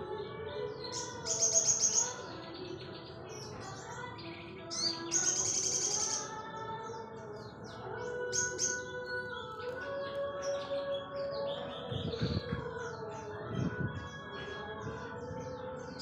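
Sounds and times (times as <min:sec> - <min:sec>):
songbird chirping: 0:00.0 - 0:16.0.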